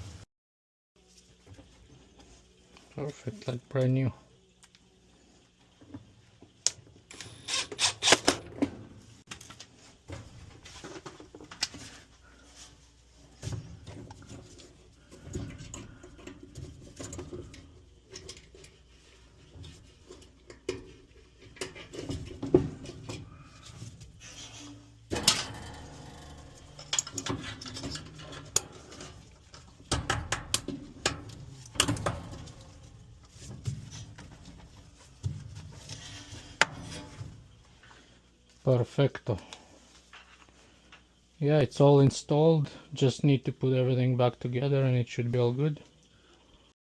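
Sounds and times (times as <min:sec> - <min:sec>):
metal clatter: 0:19.4 - 0:37.7
tools clicking and scraping metal: 0:24.2 - 0:33.0.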